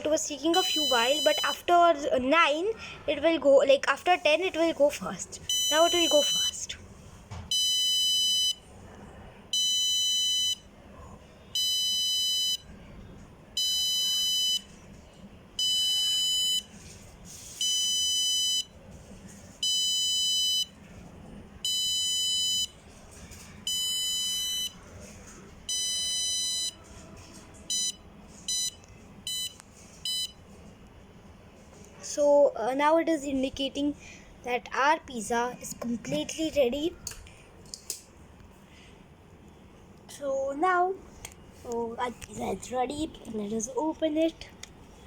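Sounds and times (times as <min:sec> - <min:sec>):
electronic buzzer beeping: 0:00.6 - 0:01.6, 0:05.5 - 0:06.6, 0:17.6 - 0:18.7, 0:23.7 - 0:24.8, 0:25.7 - 0:26.8, 0:27.7 - 0:30.4.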